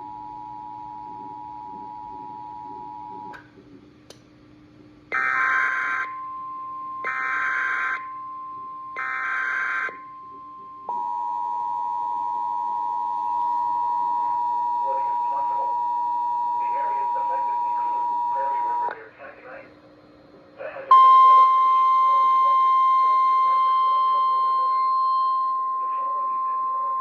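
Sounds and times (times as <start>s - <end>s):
steady single-tone alarm: 5.1s - 19.0s, 20.9s - 27.0s.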